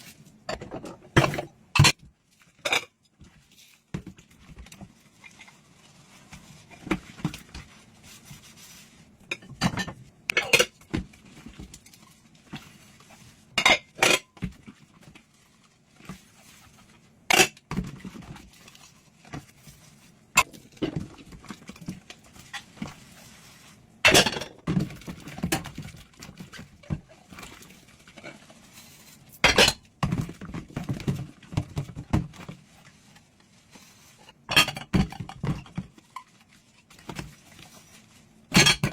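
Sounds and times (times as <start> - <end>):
scrubbing dishes: 0.5 - 38.9
dishes and cutlery clinking: 24.1 - 24.6, 29.4 - 29.8, 34.5 - 35.8, 38.5 - 38.9.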